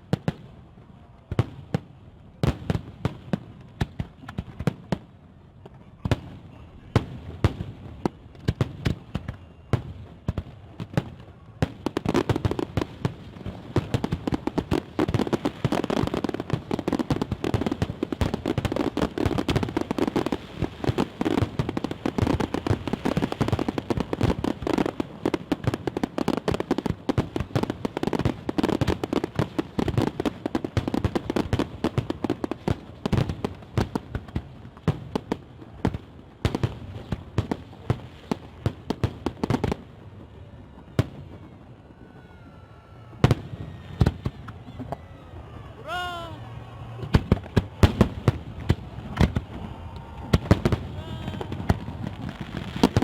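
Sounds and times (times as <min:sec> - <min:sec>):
fireworks bangs: 0:01.3 - 0:53.0.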